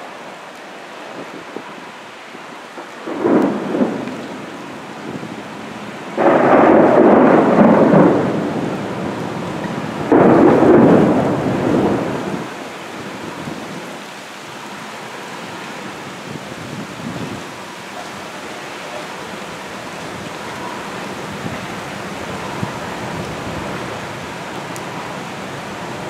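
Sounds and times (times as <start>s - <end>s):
heavy rain hissing: 0.0s - 26.0s
thunder claps rumbling: 2.8s - 13.8s.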